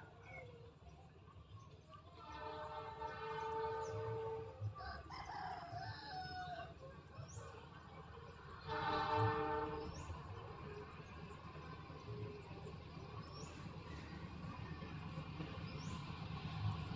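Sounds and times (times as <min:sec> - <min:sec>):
distant locomotive horn: 0:02.2 - 0:04.8, 0:08.5 - 0:11.0
rooster crowing: 0:04.8 - 0:06.7.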